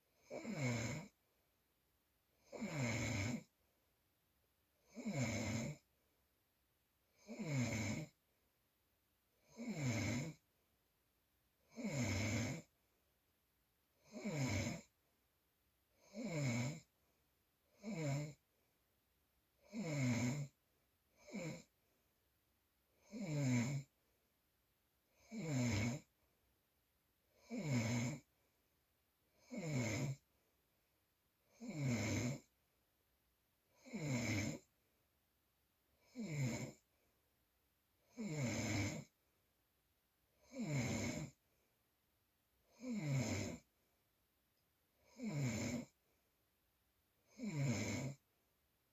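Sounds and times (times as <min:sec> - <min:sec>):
loud snoring: 0:00.2 - 0:01.2, 0:02.4 - 0:03.5, 0:04.8 - 0:05.9, 0:07.2 - 0:08.2, 0:09.4 - 0:10.4, 0:11.7 - 0:12.7, 0:14.0 - 0:14.9, 0:16.0 - 0:16.9, 0:17.8 - 0:18.4, 0:19.6 - 0:20.6, 0:21.2 - 0:21.7, 0:23.0 - 0:23.9, 0:25.2 - 0:26.1, 0:27.4 - 0:28.3, 0:29.4 - 0:30.2, 0:31.5 - 0:32.5, 0:33.8 - 0:34.7, 0:36.0 - 0:36.8, 0:38.1 - 0:39.1, 0:40.4 - 0:41.4, 0:42.7 - 0:43.7, 0:45.0 - 0:46.0, 0:47.3 - 0:48.2.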